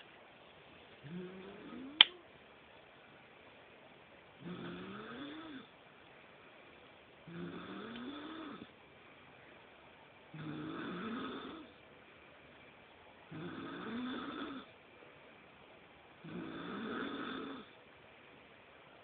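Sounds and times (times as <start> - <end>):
person snoring: 1.0 - 2.0, 4.4 - 5.7, 7.3 - 8.7, 10.4 - 11.7, 13.3 - 14.7, 16.2 - 17.7.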